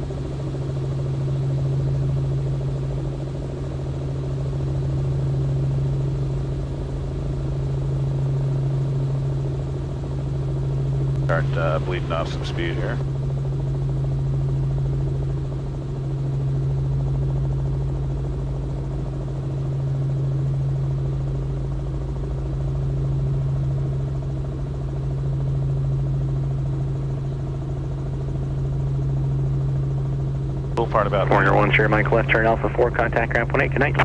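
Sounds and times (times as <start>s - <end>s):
helicopter engine and rotors: 0.0s - 34.0s.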